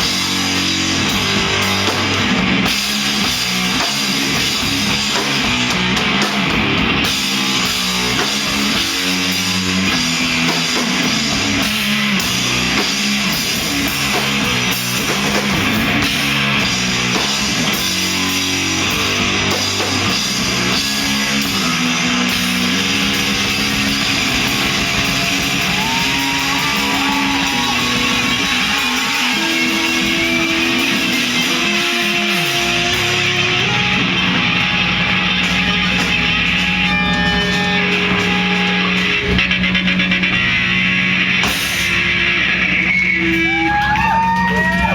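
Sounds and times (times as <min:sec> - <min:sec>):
electric guitar: 0:00.0 - 0:44.9
rock band playing: 0:00.0 - 0:44.9.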